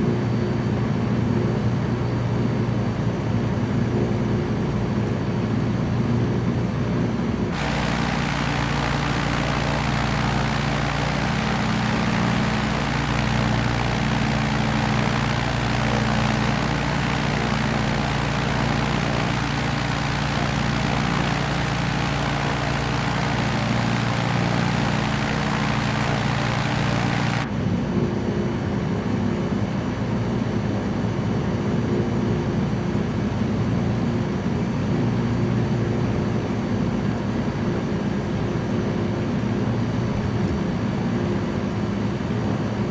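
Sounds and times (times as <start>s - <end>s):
light aircraft engine droning: 7.6s - 27.4s.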